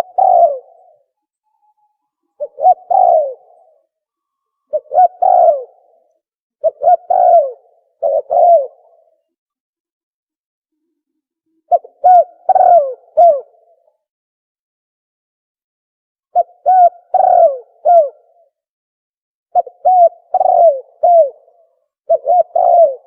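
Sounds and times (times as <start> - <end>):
dove cooing: 0.0 - 1.1, 2.4 - 3.9, 4.7 - 9.2, 11.7 - 13.8, 16.3 - 18.5, 19.5 - 23.0.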